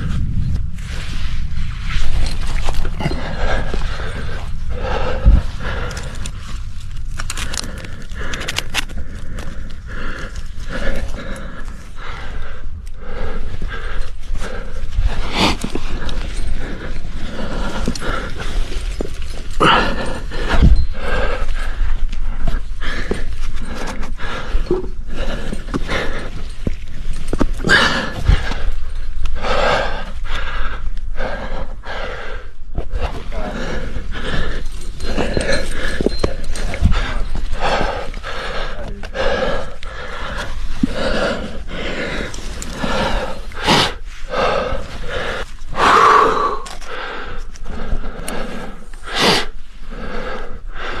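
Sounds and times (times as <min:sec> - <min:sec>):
climber gasping and exhaling: 0:00.0 - 0:51.0
person breathing hard: 0:00.0 - 0:51.0.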